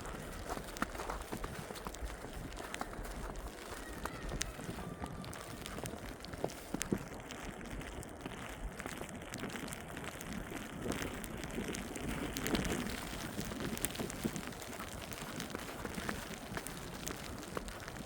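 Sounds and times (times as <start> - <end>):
footsteps crunching through snow: 0.0 - 7.4, 11.6 - 18.0.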